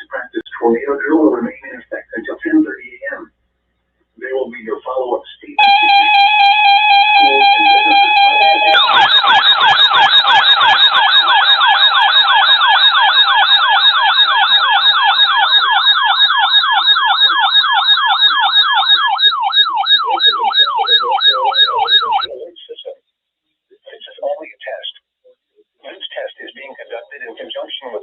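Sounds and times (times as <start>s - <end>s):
electronic siren yelping and wailing: 5.6s - 22.3s.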